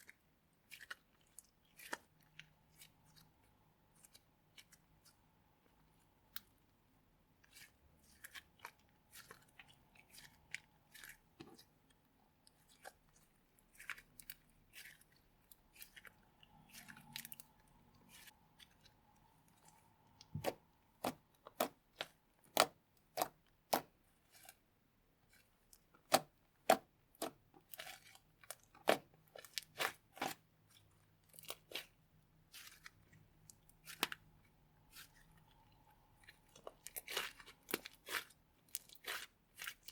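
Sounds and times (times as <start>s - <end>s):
slime squished by hand: 12.4s - 24.6s, 25.2s - 39.9s.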